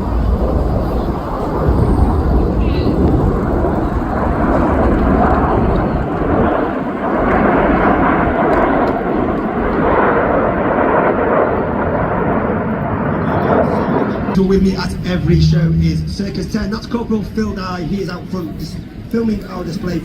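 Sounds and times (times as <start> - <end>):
jets flying past: 13.4 - 17.3.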